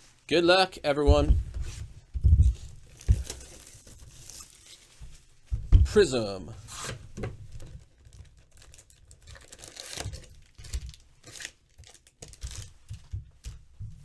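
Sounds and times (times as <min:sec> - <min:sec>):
plastic wrapping crinkling and tearing: 0:02.5 - 0:05.0, 0:06.7 - 0:13.2.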